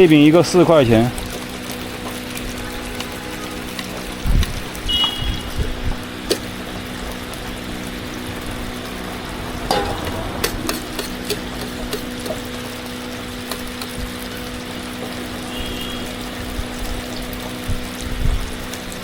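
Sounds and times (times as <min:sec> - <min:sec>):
frying oil bubbling: 0:00.0 - 0:19.0
low hum: 0:07.6 - 0:13.2.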